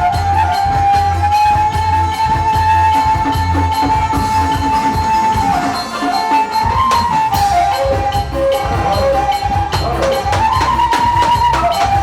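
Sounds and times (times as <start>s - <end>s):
light percussion: 0.0s - 12.0s
steady drum beats: 0.0s - 12.0s
wind instrument melody: 0.0s - 12.0s.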